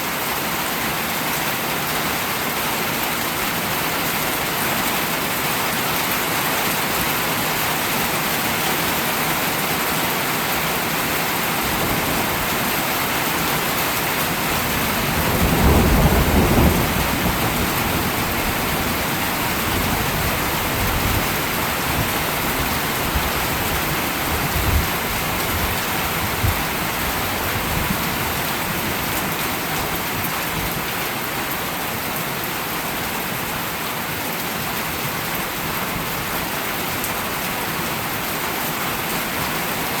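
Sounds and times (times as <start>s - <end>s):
steady rain falling: 0.0s - 40.0s
thunder rumbling: 14.3s - 28.4s.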